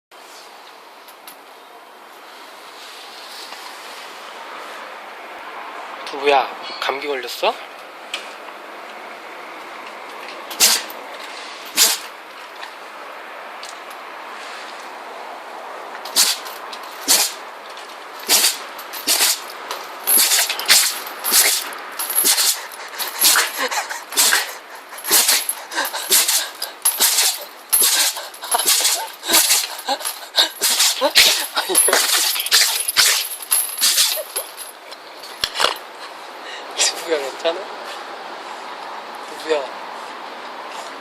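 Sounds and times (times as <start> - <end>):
dog sneezing: 10.5 - 11.0, 11.7 - 12.1, 16.0 - 17.4, 18.2 - 19.5, 20.1 - 34.7.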